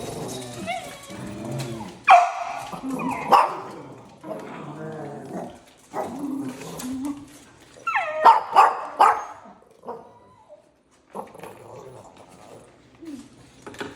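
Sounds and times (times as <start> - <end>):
dog whining: 0.0 - 3.6, 6.5 - 10.8
dog barking: 2.1 - 3.7, 8.2 - 10.0
dog yipping and whimpering: 7.8 - 10.6.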